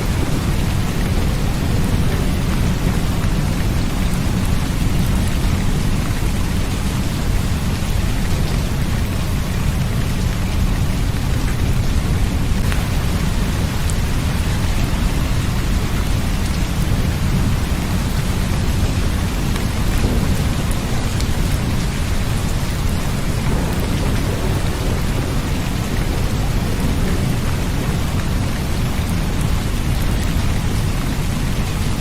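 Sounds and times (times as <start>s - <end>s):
heavy rain: 0.0s - 32.0s
deep low rumble: 16.1s - 30.8s.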